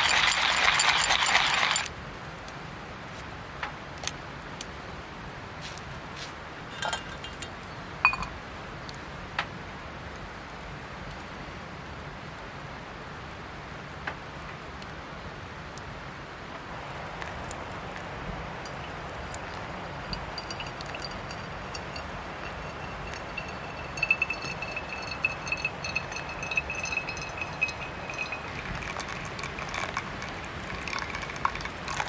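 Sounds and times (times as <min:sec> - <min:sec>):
light metallic clinks: 0:00.0 - 0:01.9, 0:06.7 - 0:08.4, 0:18.6 - 0:32.0.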